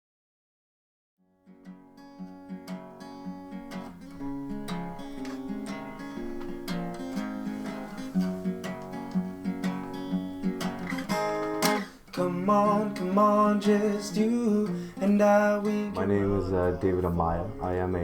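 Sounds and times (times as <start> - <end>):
acoustic guitar playing: 1.4 - 18.0.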